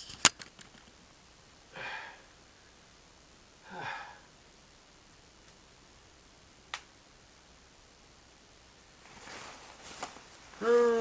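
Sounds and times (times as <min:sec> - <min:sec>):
man sighing: 0:01.7 - 0:02.3, 0:03.6 - 0:04.3, 0:10.6 - 0:11.0.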